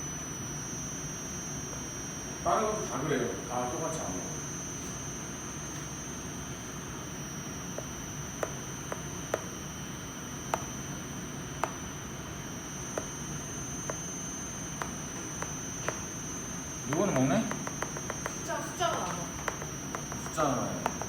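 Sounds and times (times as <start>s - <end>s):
high-pitched electronic whine: 0.0s - 21.0s.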